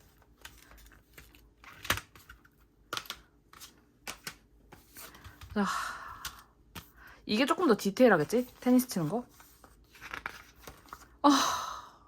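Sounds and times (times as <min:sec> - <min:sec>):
book pages turning: 0:00.0 - 0:05.5, 0:07.8 - 0:11.2.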